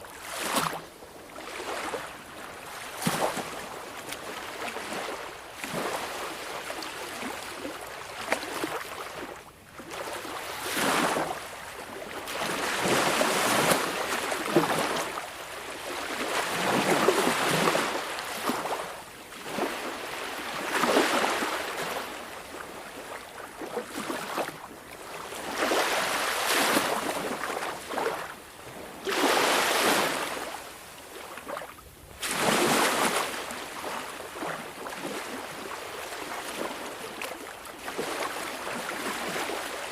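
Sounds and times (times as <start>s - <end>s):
sea waves washing onto shore: 12.2s - 39.9s.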